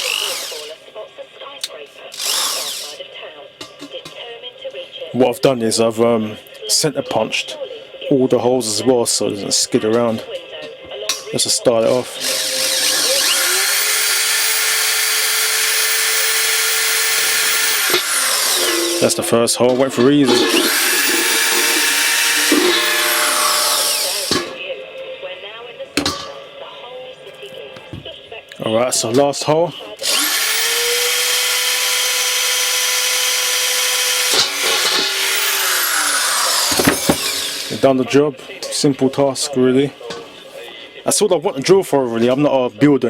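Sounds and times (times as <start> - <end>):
power drill drilling through metal: 0.0 - 0.8, 2.1 - 3.0, 11.9 - 24.6, 30.0 - 37.8.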